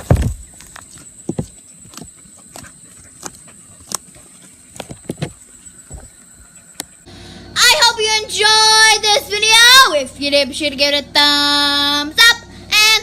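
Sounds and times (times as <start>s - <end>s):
faint high whine: 0.0s - 13.0s.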